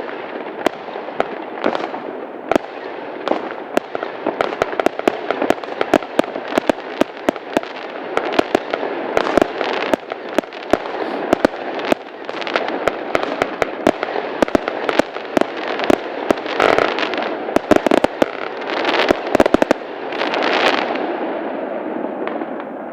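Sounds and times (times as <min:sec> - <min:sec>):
fireworks bangs and crackles: 0:00.0 - 0:22.9
fireworks hissing: 0:10.7 - 0:12.6, 0:16.6 - 0:21.0.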